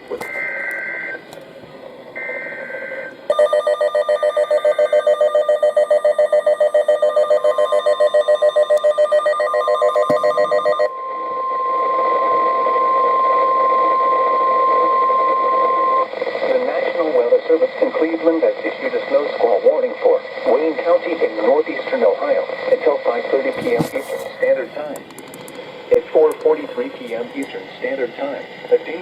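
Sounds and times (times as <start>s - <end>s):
electronic alarm beeps: 0.2s - 1.2s, 2.2s - 16.1s
steady alarm tone: 0.2s - 1.2s, 2.2s - 16.6s
radio hiss: 12.1s - 29.0s.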